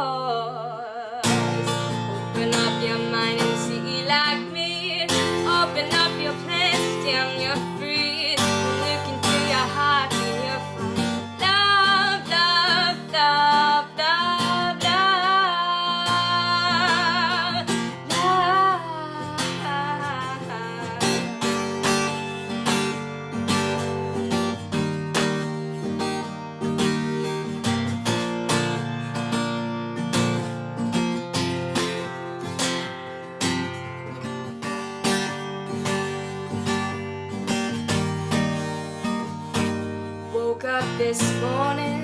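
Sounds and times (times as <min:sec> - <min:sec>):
girl singing with vibrato: 0:00.0 - 0:22.2, 0:40.2 - 0:42.0
acoustic guitar strumming: 0:00.0 - 0:42.0.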